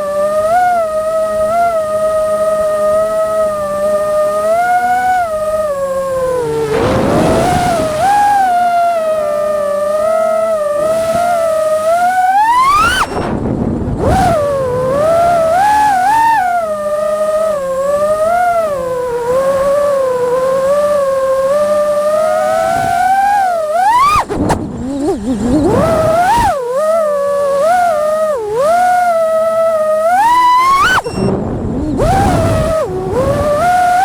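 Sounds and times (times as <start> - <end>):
drone motors whining: 0.0 - 34.0.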